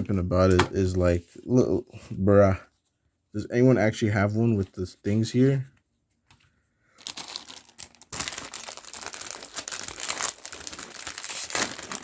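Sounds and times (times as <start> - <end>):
plastic packaging crinkling: 7.0 - 12.0
plastic tearing: 7.0 - 12.0.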